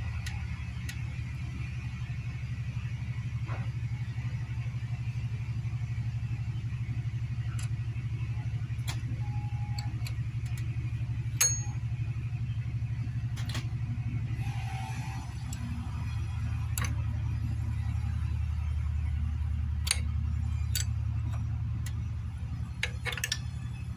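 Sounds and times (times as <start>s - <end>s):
small motorcycle engine idling: 0.0s - 23.9s
light metallic clicks: 19.8s - 22.0s.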